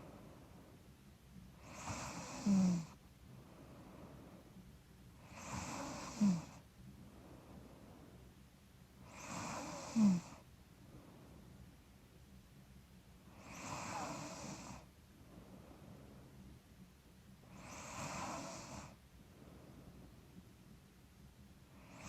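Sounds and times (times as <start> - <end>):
woman snoring: 1.6 - 3.0, 5.2 - 6.6, 9.0 - 10.4, 13.4 - 14.9, 17.5 - 19.0.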